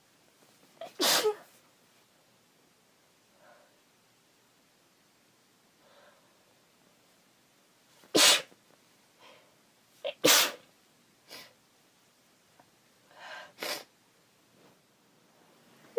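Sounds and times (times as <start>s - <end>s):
woman sneezing: 0.8s - 1.5s, 8.2s - 8.5s, 10.1s - 10.6s.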